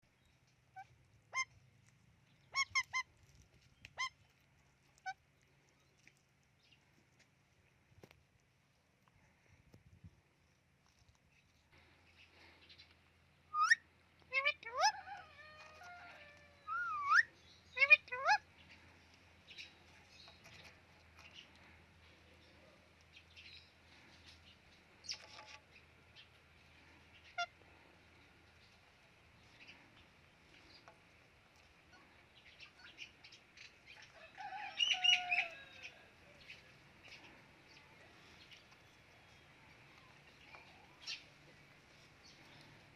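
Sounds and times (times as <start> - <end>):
parrot squawking: 16.7 - 18.4.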